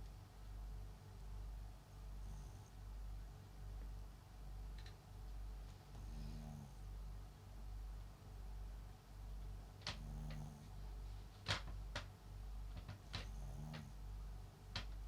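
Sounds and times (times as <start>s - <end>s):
small dog snoring: 2.1s - 2.8s, 5.9s - 7.0s, 9.9s - 11.0s, 13.2s - 14.0s
faint sharp clicks: 4.7s - 5.8s.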